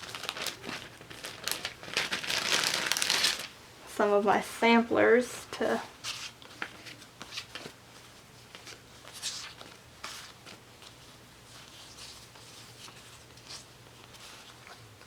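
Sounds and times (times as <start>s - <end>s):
paper rustling: 0.0s - 3.5s, 6.0s - 15.0s.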